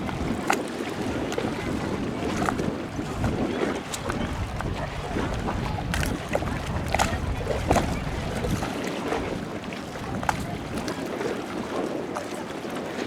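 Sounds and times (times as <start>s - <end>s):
faint voices: 3.0s - 13.0s.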